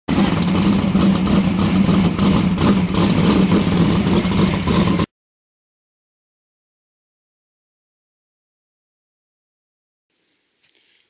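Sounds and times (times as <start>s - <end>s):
loud engine running: 0.1s - 5.1s.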